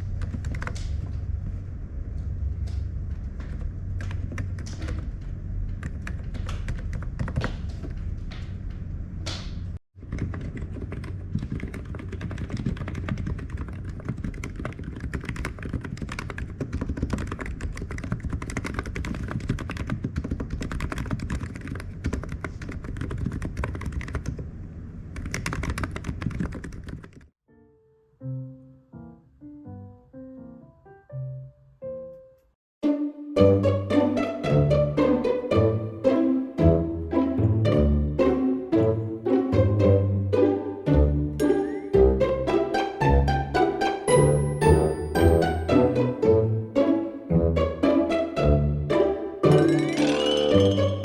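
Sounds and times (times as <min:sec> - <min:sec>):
keyboard typing: 0:00.1 - 0:00.9, 0:05.7 - 0:07.5, 0:10.0 - 0:24.4, 0:25.1 - 0:27.3.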